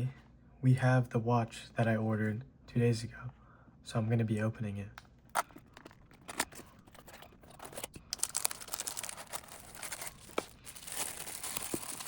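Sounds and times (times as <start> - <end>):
packaging tearing and crinkling: 6.1 - 12.0.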